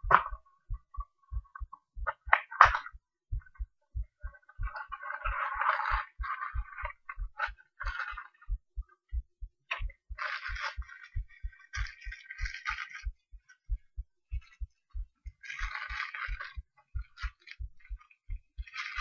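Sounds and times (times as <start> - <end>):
heartbeat through stethoscope: 0.0 - 19.0
scratchy rustling noise: 4.2 - 8.6, 9.7 - 19.0.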